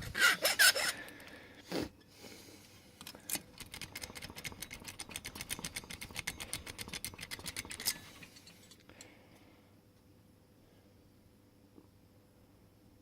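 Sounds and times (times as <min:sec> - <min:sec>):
metal-on-metal filing strokes: 0:00.1 - 0:01.0.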